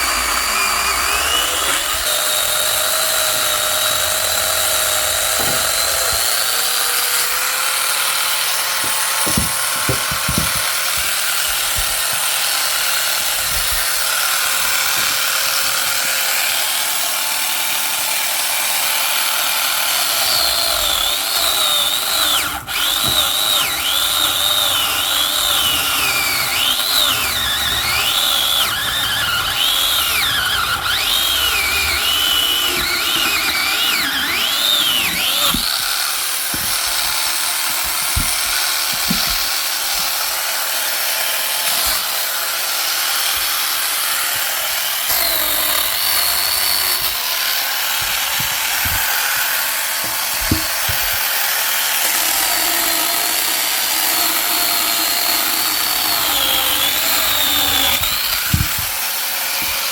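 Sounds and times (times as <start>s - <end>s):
power saw cutting wood: 0.0s - 59.9s.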